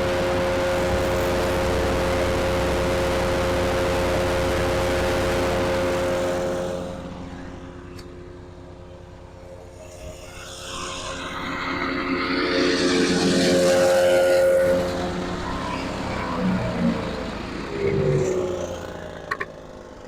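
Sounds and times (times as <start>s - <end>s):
wood chipper engine running: 0.0s - 9.7s.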